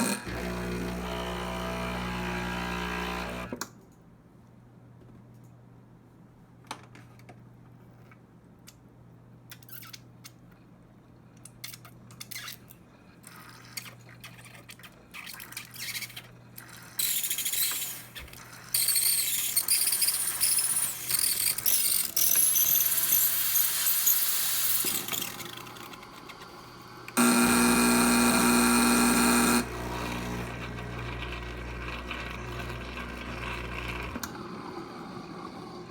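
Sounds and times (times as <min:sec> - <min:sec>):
pump buzzing hum: 0:00.0 - 0:03.6, 0:27.0 - 0:34.3
espresso machine crackling hiss: 0:27.1 - 0:30.7.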